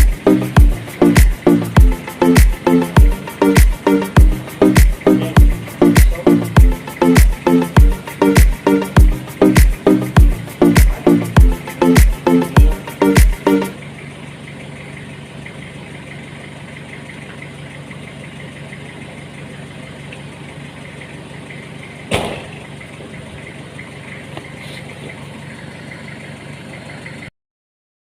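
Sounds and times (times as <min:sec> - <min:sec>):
sharp knock: 0:22.1 - 0:22.6.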